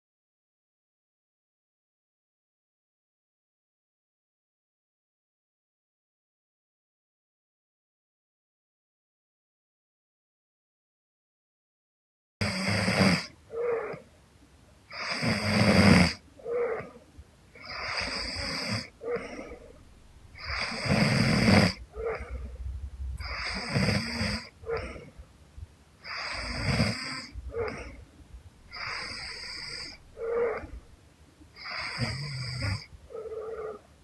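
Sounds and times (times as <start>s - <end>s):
woman snoring: 12.4s - 14.0s, 14.9s - 17.0s, 17.6s - 19.8s, 20.4s - 22.6s, 23.2s - 25.2s, 26.0s - 28.1s, 28.7s - 30.9s, 31.6s - 33.8s.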